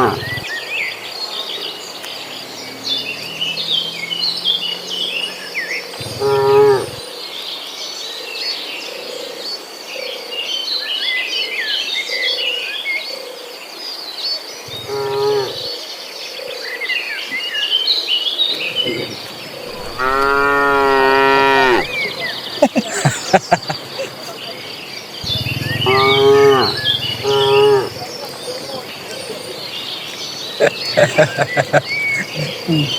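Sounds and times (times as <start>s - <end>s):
insects buzzing: 0.0s - 7.0s, 18.5s - 32.9s
birds chirping: 0.0s - 9.2s, 14.6s - 15.7s, 17.2s - 32.9s
cattle mooing: 6.2s - 7.0s, 19.7s - 22.0s, 25.8s - 28.0s.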